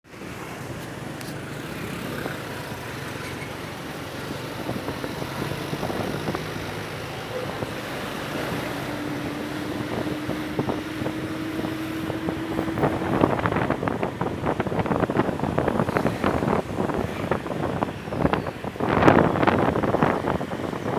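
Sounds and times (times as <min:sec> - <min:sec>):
wind buffeting microphone: 0:03.5 - 0:20.9
motorcycle engine running: 0:04.4 - 0:16.8
steady rising tone: 0:05.2 - 0:14.3.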